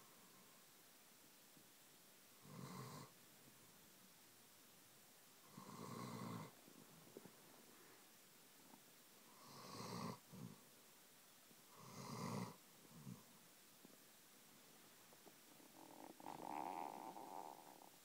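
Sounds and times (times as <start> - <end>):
dog snoring: 2.4 - 3.1, 5.5 - 6.5, 9.3 - 10.6, 11.7 - 13.2, 15.5 - 18.0.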